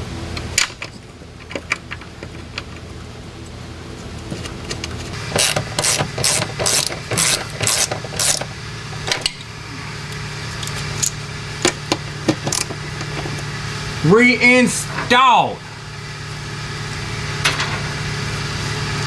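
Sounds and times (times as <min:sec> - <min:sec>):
steady low hum: 0:00.0 - 0:19.0
hand ratchet clicking: 0:05.4 - 0:08.5.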